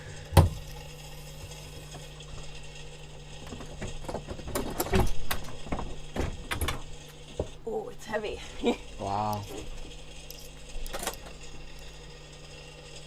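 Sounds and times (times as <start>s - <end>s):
steady low hum: 0.0s - 13.0s
mechanical clattering and knocking: 1.4s - 7.7s, 9.4s - 11.6s.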